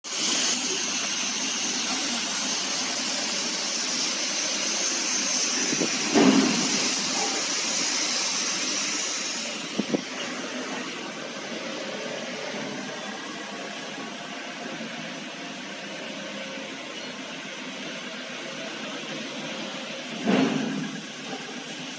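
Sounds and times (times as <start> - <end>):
industrial washing machine running: 0.0 - 21.9
thud: 6.1 - 6.7, 20.2 - 20.8.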